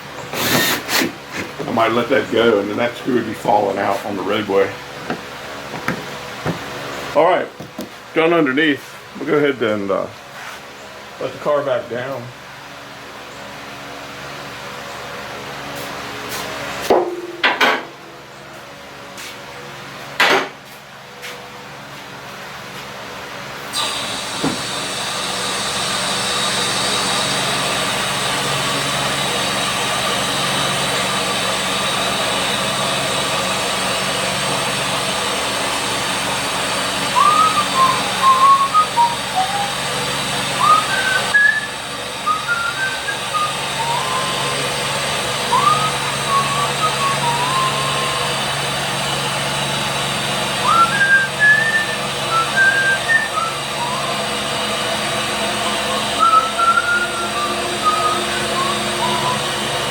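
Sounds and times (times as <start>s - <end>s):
car lift motor humming and hissing: 0.0s - 59.9s
person whistling: 37.1s - 39.9s, 40.6s - 44.7s, 45.4s - 48.4s, 50.6s - 54.2s, 55.9s - 59.9s.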